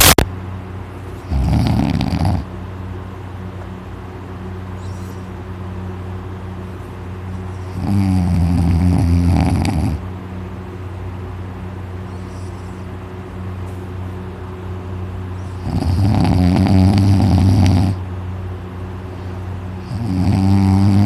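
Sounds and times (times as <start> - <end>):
man snoring loudly: 1.3 - 2.5, 7.8 - 10.0, 15.6 - 18.0, 19.8 - 21.0.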